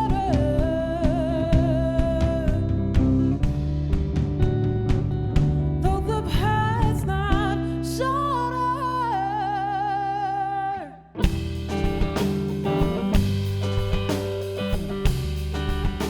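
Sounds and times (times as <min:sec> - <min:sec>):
live band with guitar and drums: 0:00.0 - 0:08.8, 0:11.2 - 0:16.0.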